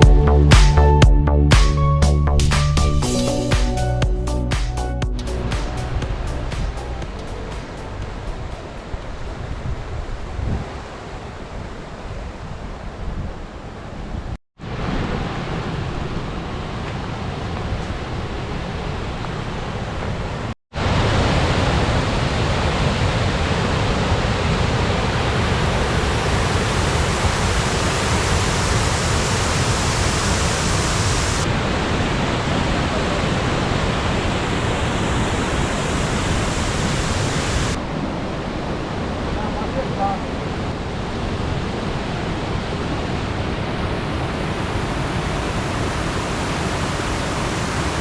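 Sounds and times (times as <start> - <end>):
waterfall roaring: 14.6 - 48.0.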